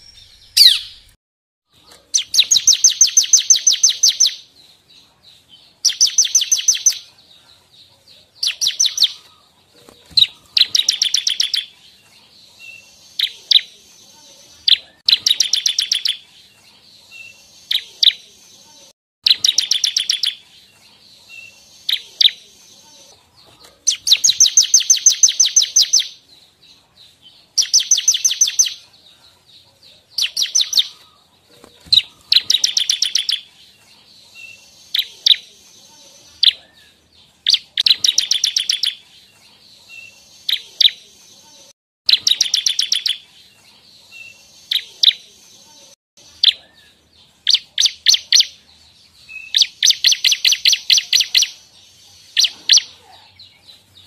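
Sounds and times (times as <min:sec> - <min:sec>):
bird singing fast trills: 0:00.0 - 0:01.1, 0:02.2 - 0:04.7, 0:05.8 - 0:07.1, 0:10.1 - 0:11.7, 0:19.2 - 0:20.5, 0:23.9 - 0:26.2, 0:31.8 - 0:33.5, 0:42.1 - 0:43.2, 0:49.3 - 0:51.6, 0:52.2 - 0:53.0
bird chirps: 0:00.0 - 0:54.0.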